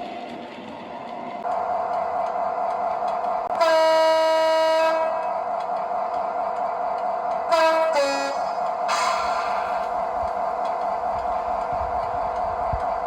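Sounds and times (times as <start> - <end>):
model locomotive horn: 3.5 - 5.2, 7.5 - 9.5.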